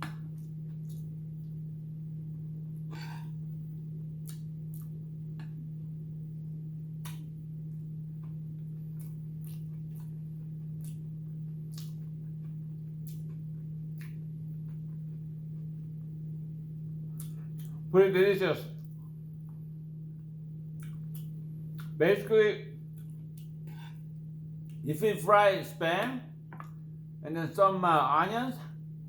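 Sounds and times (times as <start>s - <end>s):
low electrical hum: 0.0s - 29.0s
eating clicks and smacks: 4.2s - 5.6s, 7.0s - 7.3s, 8.2s - 15.1s, 20.7s - 22.0s, 22.9s - 23.8s.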